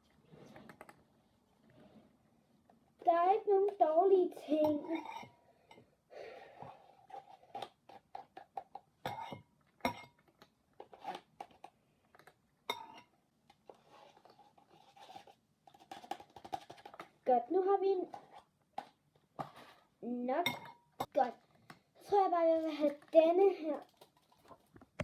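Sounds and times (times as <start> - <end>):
soft clicks and taps of plastic cups: 0.1 - 1.1, 7.6 - 17.2, 18.1 - 19.8, 20.6 - 22.0, 22.7 - 25.0.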